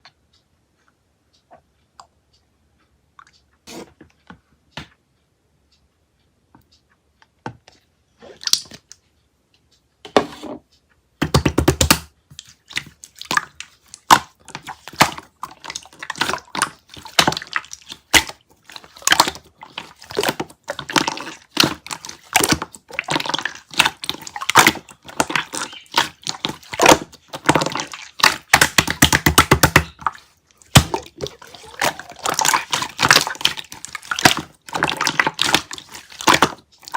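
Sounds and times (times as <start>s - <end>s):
slime clicking and popping: 11.3s - 36.9s.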